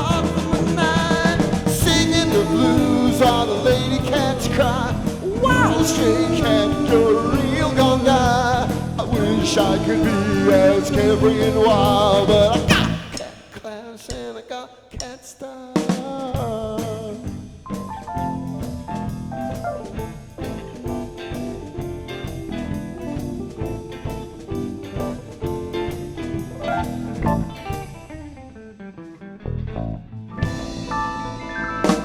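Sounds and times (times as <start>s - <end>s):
rockabilly band playing: 0.0s - 13.9s, 15.8s - 32.0s
drum kit beat: 0.0s - 14.3s, 15.8s - 28.5s, 30.4s - 32.0s.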